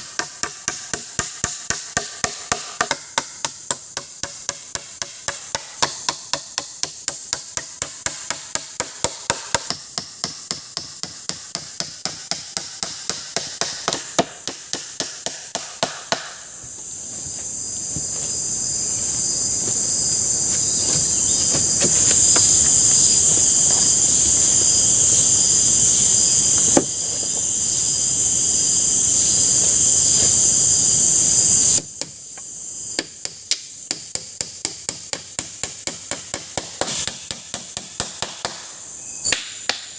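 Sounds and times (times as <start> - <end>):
high-pitched insect chorus: 0.0 - 39.9
tool knocking on wood: 20.5 - 23.9.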